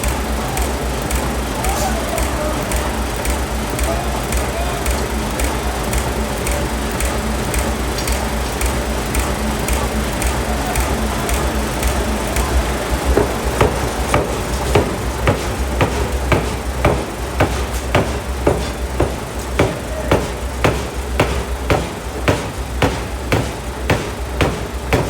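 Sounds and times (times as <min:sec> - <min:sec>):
low machine hum: 0:00.0 - 0:25.0
forging hammer striking steel: 0:13.0 - 0:25.0.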